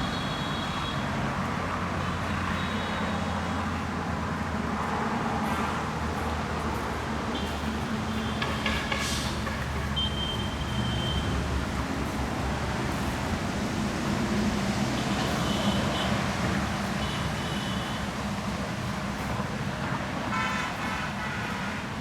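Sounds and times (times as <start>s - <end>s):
car horn toots: 20.3s - 21.8s.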